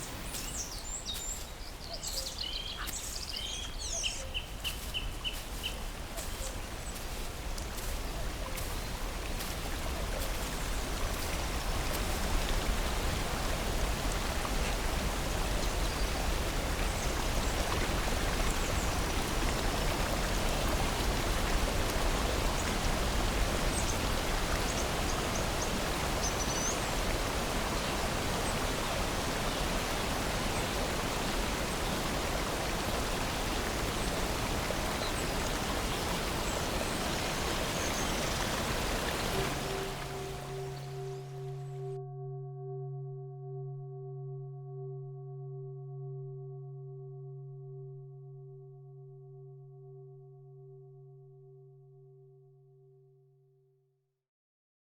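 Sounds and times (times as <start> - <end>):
faint bird chirps: 0.0 - 6.7
water rushing: 0.0 - 41.5.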